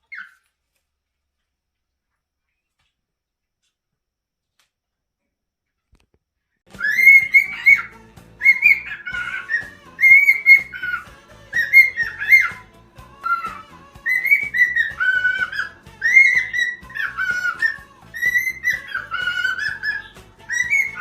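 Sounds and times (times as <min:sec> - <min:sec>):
cockatiel whistling: 0:00.0 - 0:00.4, 0:06.7 - 0:21.0.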